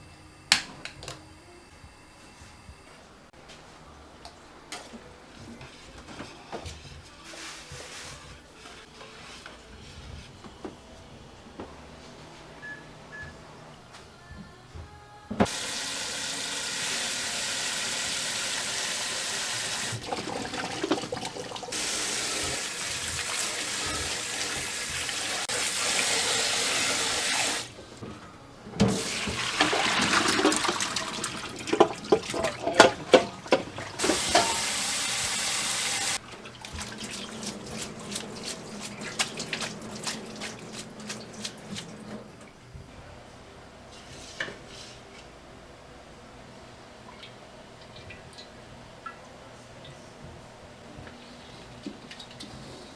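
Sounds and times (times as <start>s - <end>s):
water running from faucet: 15.5s - 27.7s, 29.0s - 42.3s.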